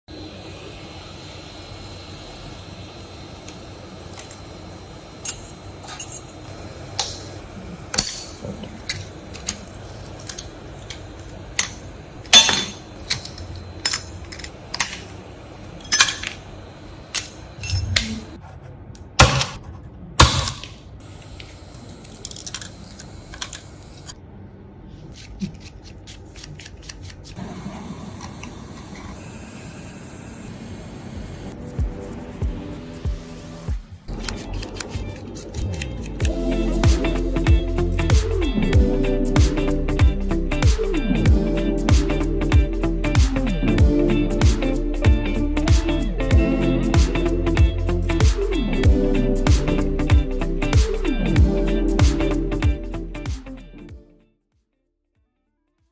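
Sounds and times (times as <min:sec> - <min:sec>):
steady low hiss: 0:36.3 - 0:53.2.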